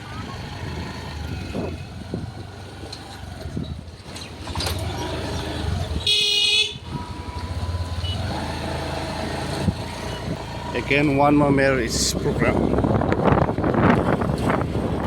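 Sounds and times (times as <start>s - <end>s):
scooter engine rumble: 0.0s - 15.0s
vehicle horn toot: 6.0s - 6.9s, 8.0s - 8.4s.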